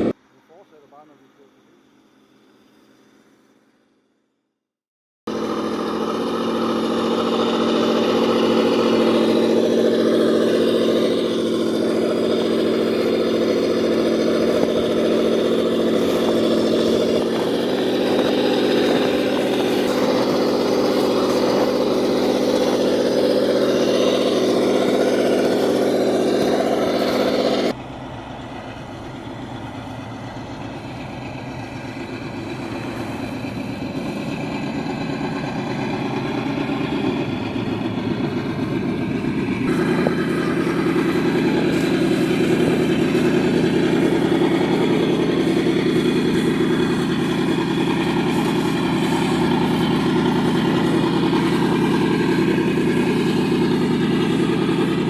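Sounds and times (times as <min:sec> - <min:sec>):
toy car electric motor whine: 0:05.3 - 0:27.8, 0:39.6 - 0:55.0.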